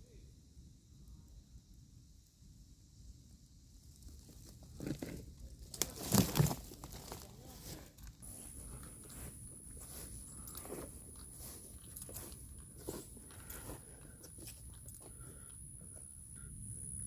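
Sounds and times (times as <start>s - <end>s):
footsteps crunching through dry leaves: 5.7s - 15.2s
high-pitched whine: 14.3s - 17.0s.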